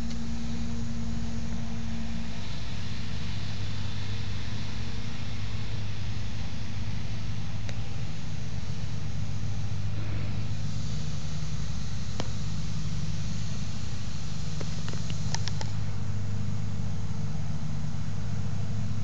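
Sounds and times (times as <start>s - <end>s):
smoke machine humming: 0.0s - 19.0s
soft hiss: 0.0s - 19.0s
sharp clicks: 14.6s - 15.8s.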